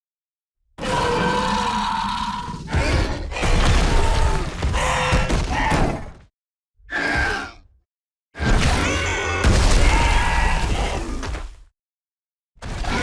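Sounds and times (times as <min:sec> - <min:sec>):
creature roaring: 0:00.8 - 0:06.1, 0:06.9 - 0:07.7, 0:08.6 - 0:11.2.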